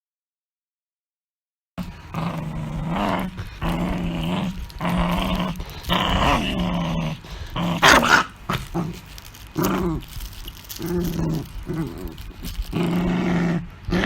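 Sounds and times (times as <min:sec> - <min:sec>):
dog growling: 0:01.8 - 0:14.0
dog yelping: 0:07.7 - 0:09.0.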